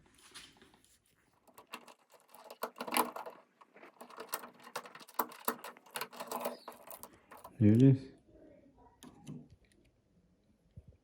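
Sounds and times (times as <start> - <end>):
pliers clicking and scraping on metal: 4.0 - 7.6.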